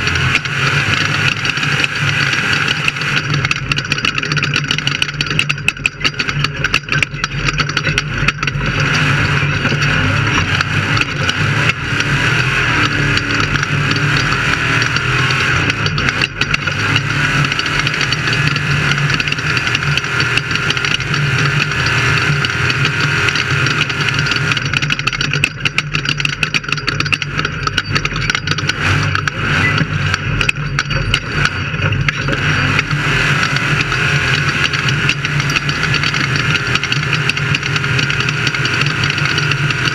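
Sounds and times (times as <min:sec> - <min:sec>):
engine running with low hum: 0:00.0 - 0:39.9
knocks and rattles: 0:00.0 - 0:39.9.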